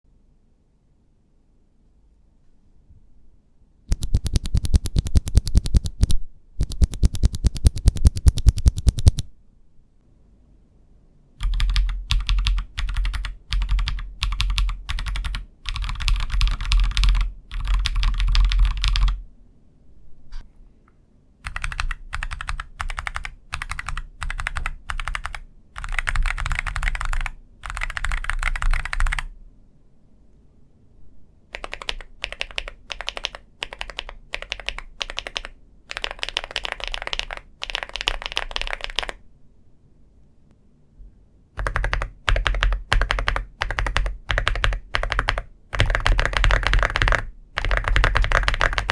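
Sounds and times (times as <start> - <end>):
mechanical keyboard typing: 3.9 - 9.3, 11.4 - 19.2, 21.4 - 29.3, 31.5 - 39.2, 41.6 - 48.9.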